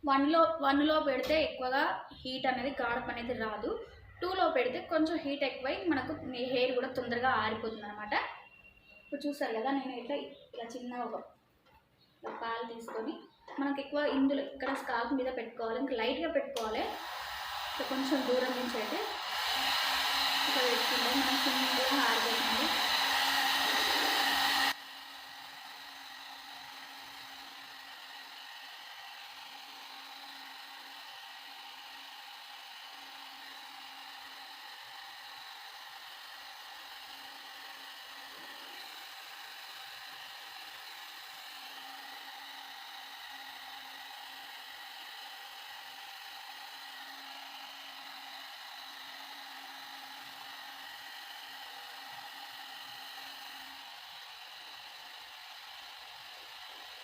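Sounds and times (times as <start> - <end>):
hair dryer running: 16.6 - 57.0.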